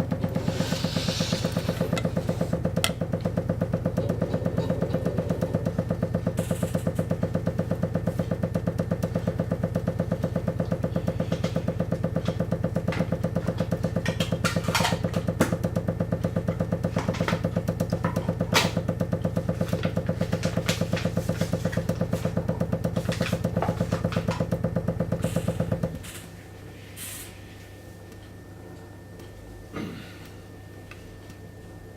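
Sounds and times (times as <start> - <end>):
steady low hum: 17.7 - 31.9.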